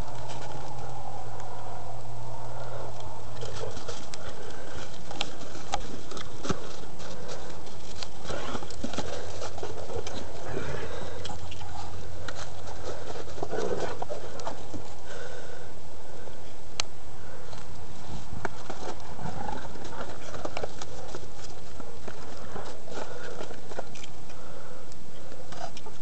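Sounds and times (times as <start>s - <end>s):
dog paws scuffling: 0.0s - 1.6s, 2.7s - 15.4s, 17.9s - 24.3s.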